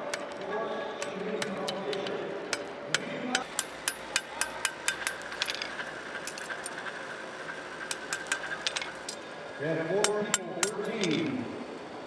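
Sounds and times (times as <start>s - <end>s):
hammers striking metal on anvils: 1.0s - 6.8s, 7.9s - 9.2s, 10.0s - 11.3s.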